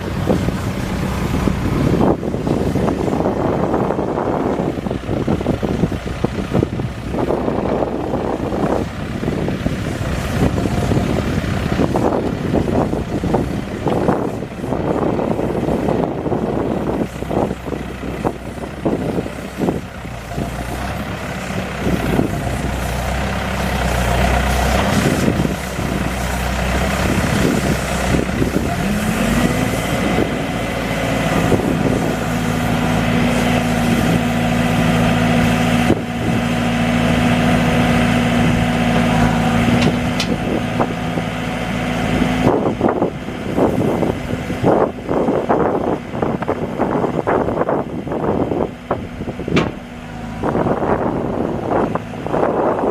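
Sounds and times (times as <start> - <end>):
diesel engine running: 0.0 - 52.9
knocks and clanks: 49.4 - 50.0.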